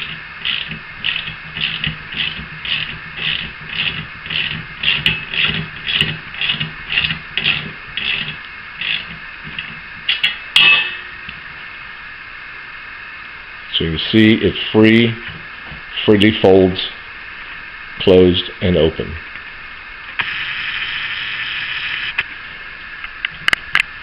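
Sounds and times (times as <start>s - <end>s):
ratchet wrench rasping: 0.0s - 10.3s.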